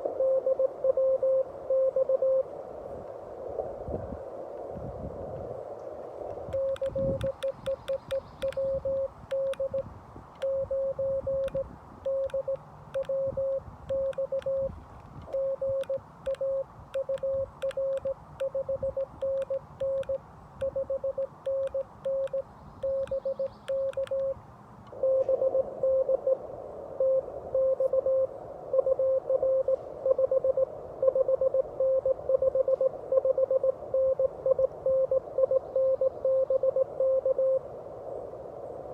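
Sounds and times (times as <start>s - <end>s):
receiver hiss: 0.0s - 38.9s
morse code sidetone: 0.2s - 2.4s, 6.5s - 26.4s, 27.0s - 37.6s
morse tone from receiver: 0.2s - 2.5s, 6.5s - 26.4s, 27.0s - 37.6s
paddle clicks: 6.5s - 9.8s.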